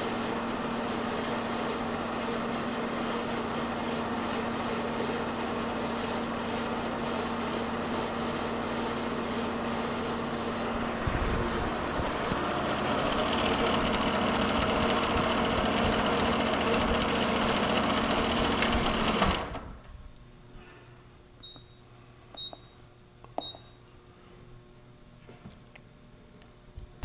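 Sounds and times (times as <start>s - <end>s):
milling machine humming: 0.0s - 19.8s.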